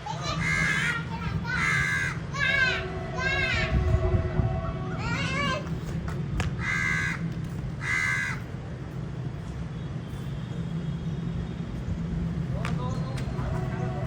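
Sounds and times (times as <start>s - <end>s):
crow cawing: 0.3s - 2.6s, 6.6s - 7.2s, 7.8s - 8.5s.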